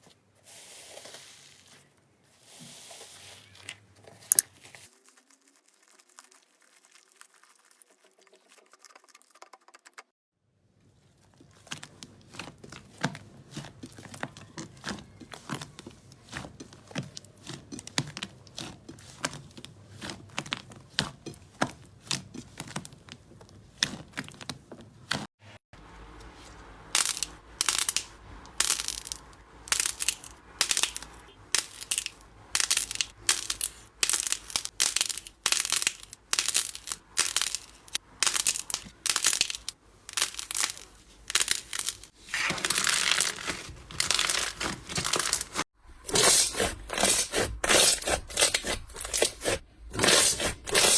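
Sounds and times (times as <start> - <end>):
crinkly crunches: 3.0 - 8.9, 26.4 - 50.9
slime crackling and popping: 27.0 - 45.6.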